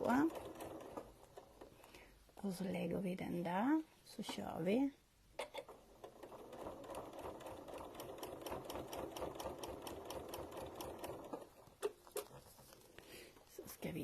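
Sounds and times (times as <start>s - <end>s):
sewing machine stitching: 0.0s - 1.7s, 5.4s - 12.7s.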